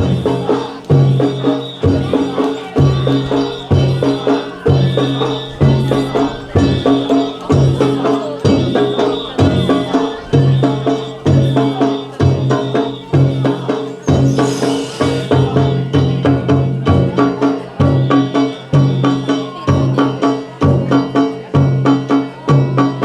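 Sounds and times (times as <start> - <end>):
large drum beating: 0.0 - 18.1.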